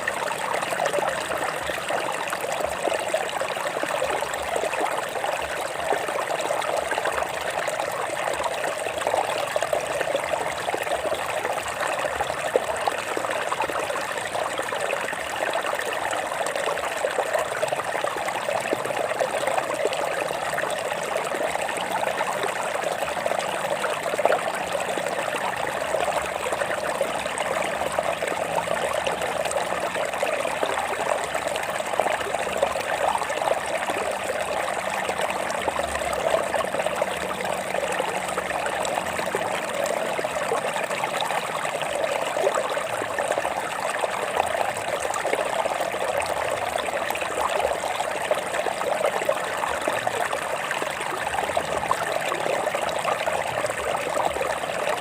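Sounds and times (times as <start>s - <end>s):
stream water over rocks: 0.0s - 55.0s.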